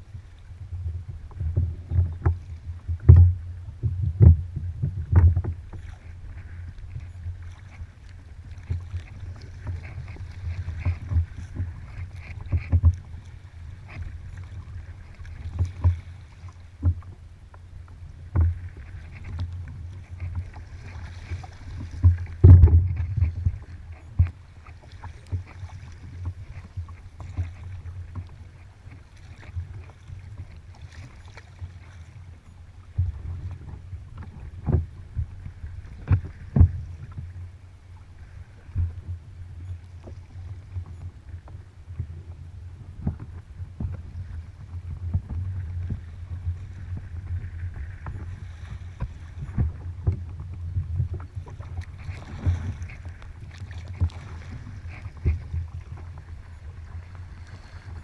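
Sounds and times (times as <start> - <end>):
steady low rumble: 0.0 - 28.9
paddle splashes: 0.0 - 58.0
knocks against kayak hull: 1.4 - 5.8, 21.4 - 24.4.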